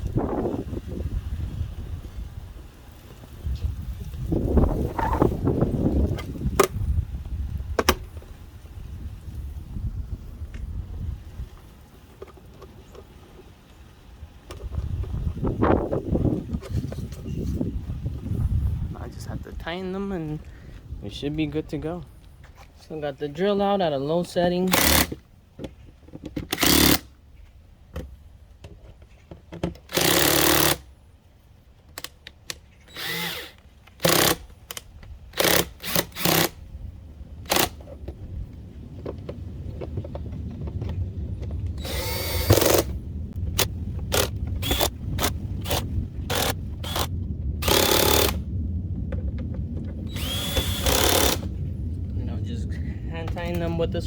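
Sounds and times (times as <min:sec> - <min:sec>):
low rumble: 0:14.7 - 0:22.4, 0:36.6 - 0:54.0
power drill driving screws: 0:24.7 - 0:25.2, 0:26.5 - 0:27.1, 0:29.9 - 0:30.8, 0:32.9 - 0:36.6, 0:37.4 - 0:37.8, 0:41.8 - 0:42.9, 0:43.6 - 0:48.4, 0:50.1 - 0:51.5.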